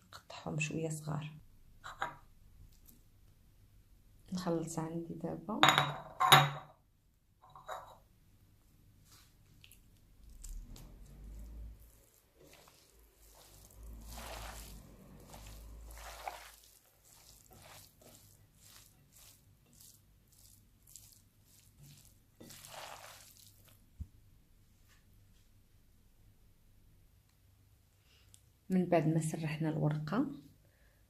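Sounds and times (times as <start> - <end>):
pastry sheets rustling: 8.9 - 23.9.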